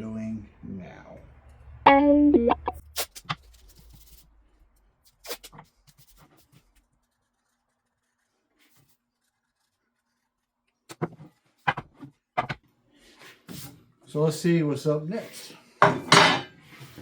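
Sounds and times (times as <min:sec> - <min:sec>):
pencil scratching on wood: 0:05.3 - 0:12.1.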